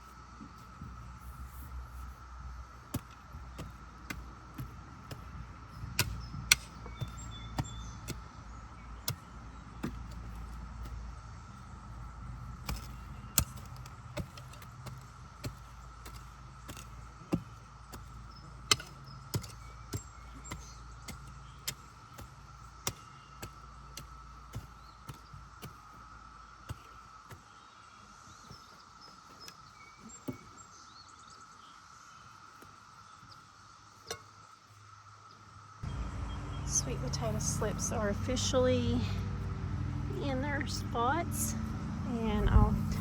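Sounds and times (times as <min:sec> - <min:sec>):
low rumble: 0:35.8 - 0:43.0.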